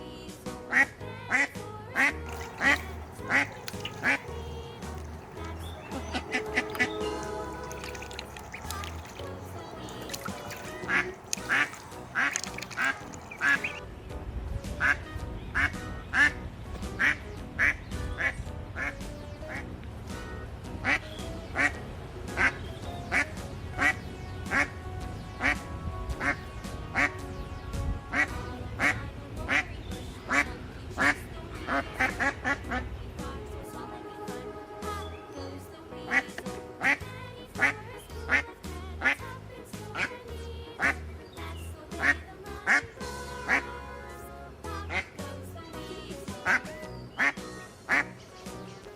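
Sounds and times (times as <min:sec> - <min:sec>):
background music: 0:00.0 - 0:48.9
ducks quacking: 0:00.7 - 0:13.8, 0:17.0 - 0:21.8, 0:22.4 - 0:24.8, 0:26.2 - 0:27.2, 0:28.1 - 0:32.8, 0:46.4 - 0:48.2.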